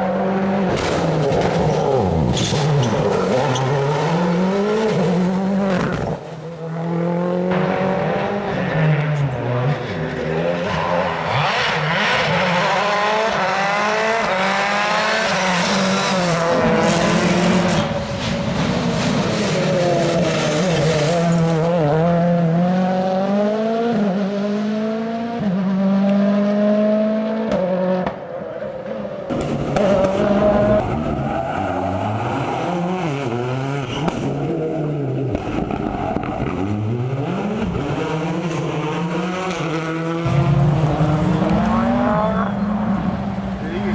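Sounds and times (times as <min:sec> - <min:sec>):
rally car engine accelerating: 0:00.0 - 0:43.9
exhaust pops: 0:40.3 - 0:43.9.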